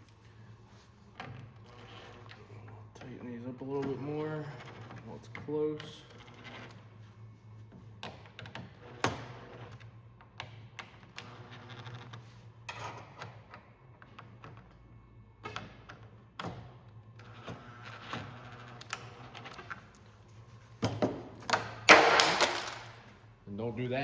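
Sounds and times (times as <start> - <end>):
clamps clicking and knocking: 20.8 - 23.1.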